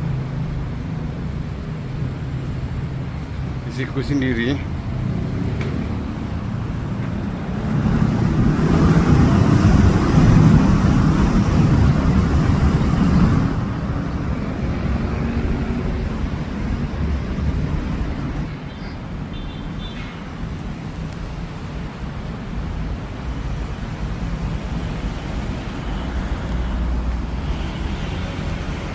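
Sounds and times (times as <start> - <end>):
traffic rumble: 0.0 - 28.9
vehicle passing: 4.8 - 18.4.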